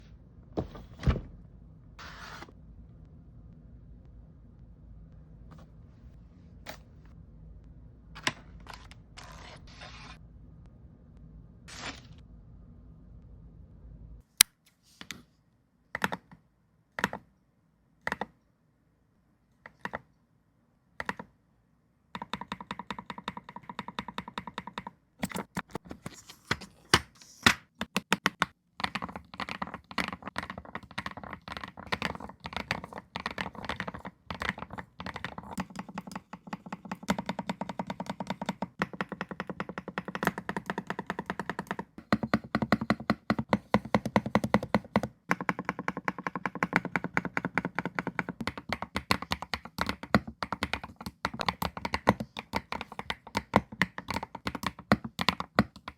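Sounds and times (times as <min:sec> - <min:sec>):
keyboard typing clacks: 0:22.2 - 0:25.6, 0:27.8 - 0:55.9.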